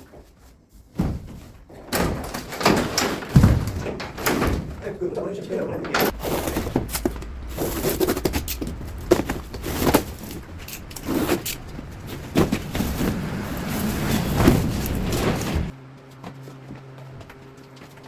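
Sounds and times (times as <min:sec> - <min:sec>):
knocks clicks and scraping: 0:01.7 - 0:16.6
low steady hum: 0:03.4 - 0:16.1.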